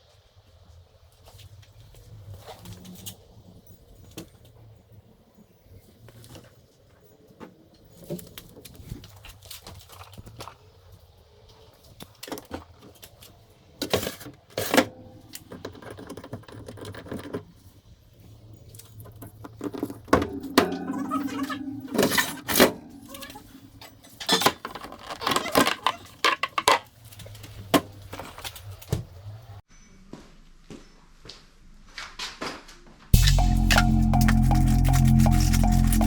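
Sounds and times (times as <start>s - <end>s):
metal tools clanking and rattling: 19.5s - 25.8s
low hum: 20.2s - 24.0s, 33.2s - 36.0s.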